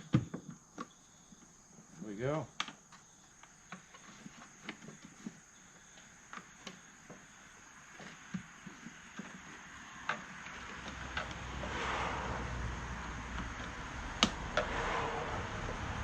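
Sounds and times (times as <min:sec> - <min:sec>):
crickets chirping: 0:00.0 - 0:16.0.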